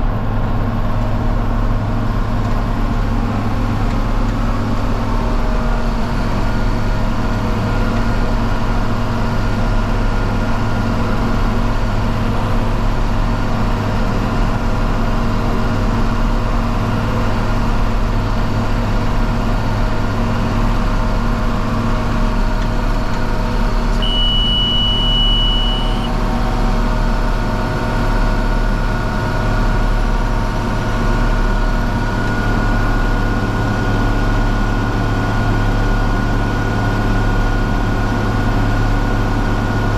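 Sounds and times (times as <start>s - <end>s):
tractor diesel engine running: 0.0s - 39.9s
high electronic beep: 24.0s - 26.1s.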